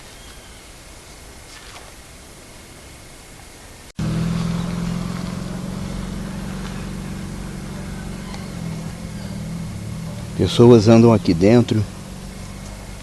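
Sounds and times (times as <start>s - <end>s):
car engine running: 4.0s - 13.0s.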